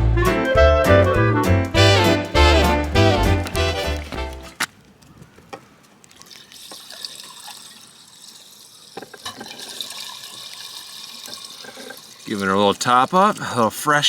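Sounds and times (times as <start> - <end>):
fuel trickling into a tank: 6.0 - 14.0.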